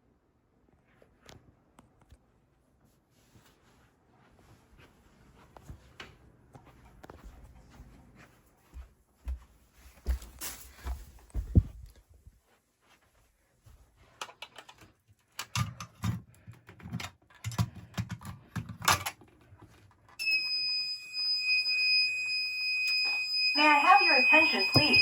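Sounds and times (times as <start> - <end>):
handling noise clicks and thumps: 14.2 - 20.0.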